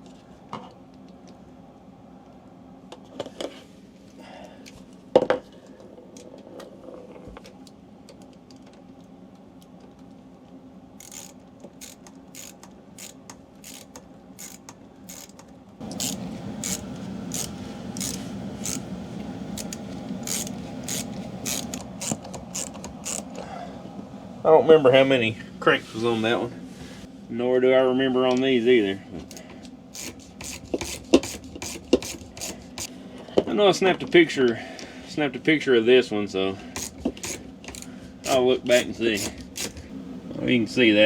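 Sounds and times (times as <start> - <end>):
ratchet clicking: 11.0 - 18.8, 19.6 - 23.4, 30.0 - 32.9, 36.8 - 39.8
grinding rub of mechanism: 11.0 - 18.9, 19.5 - 23.4, 30.0 - 32.9, 36.8 - 39.9.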